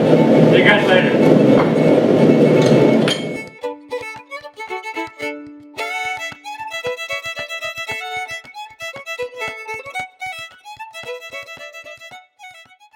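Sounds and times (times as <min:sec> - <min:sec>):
fiddle music: 0:00.0 - 0:12.9.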